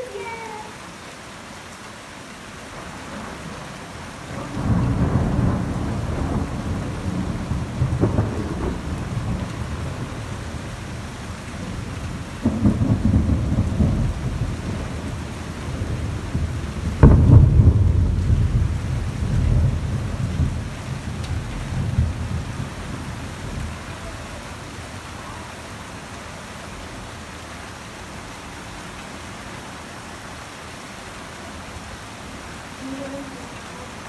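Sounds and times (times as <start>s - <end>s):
heavy rain falling: 0.0s - 34.0s
thunder rumbling and cracking: 2.7s - 26.1s.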